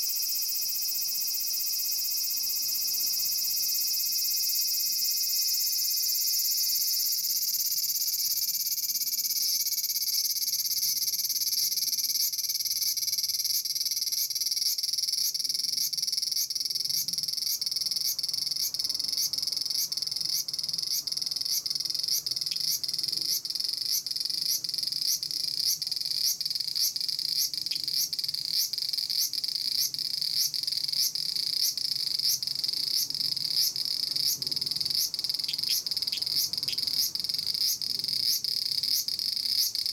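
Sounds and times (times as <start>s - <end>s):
cicada buzzing: 0.0s - 39.9s.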